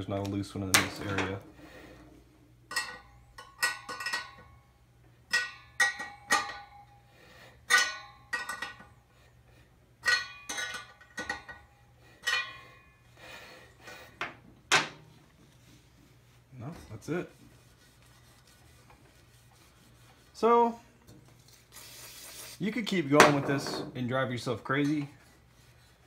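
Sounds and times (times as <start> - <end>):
metal spokes pinging: 2.6 - 7.0, 7.6 - 9.1, 10.0 - 13.0.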